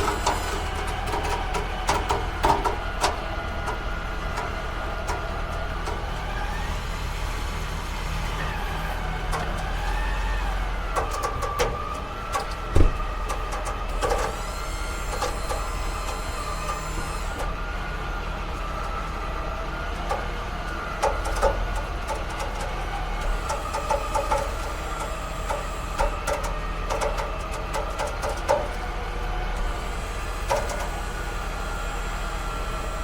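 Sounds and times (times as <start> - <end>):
clicks and rattles in cab: 0.0 - 6.3, 10.8 - 14.4, 20.0 - 29.0
truck engine drone: 0.0 - 33.0.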